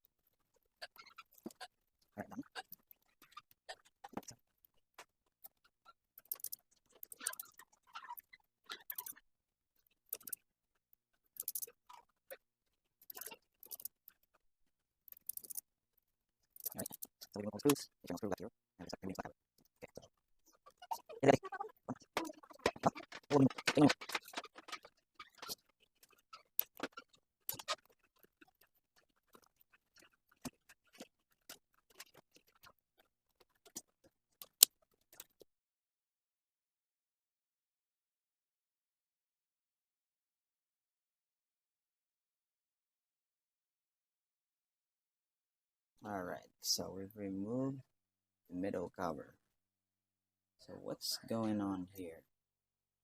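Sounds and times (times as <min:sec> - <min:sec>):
repair tools clicking on plastic: 0:06.2 - 0:07.4, 0:11.4 - 0:11.7
screwdriver clicks and scrapes: 0:06.2 - 0:07.5, 0:08.7 - 0:09.1, 0:10.1 - 0:10.4, 0:11.4 - 0:11.7, 0:13.0 - 0:14.0, 0:15.1 - 0:15.6, 0:16.6 - 0:17.8.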